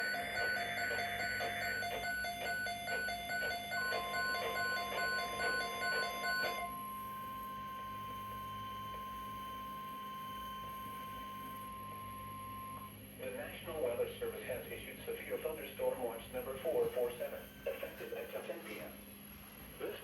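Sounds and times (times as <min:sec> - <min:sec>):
steady warning alarm tone: 0:00.0 - 0:13.1, 0:16.1 - 0:19.0
weather radio beeping: 0:16.7 - 0:18.6.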